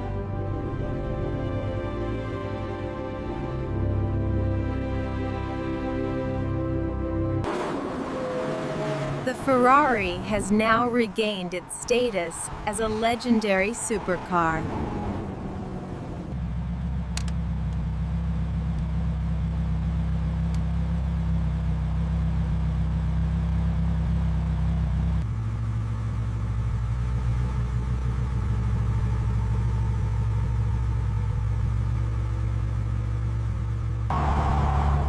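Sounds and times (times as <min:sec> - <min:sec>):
car engine droning: 0:00.0 - 0:35.0.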